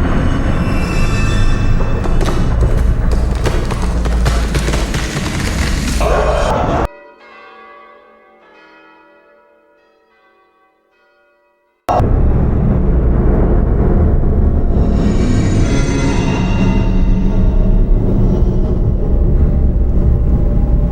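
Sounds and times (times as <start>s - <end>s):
dense horror sound effect: 0.0s - 6.9s, 11.9s - 20.9s.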